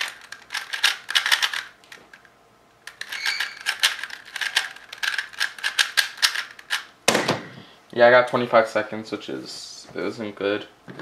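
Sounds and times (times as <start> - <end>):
plastic puzzle cube clacking: 0.0 - 1.7, 2.8 - 6.9.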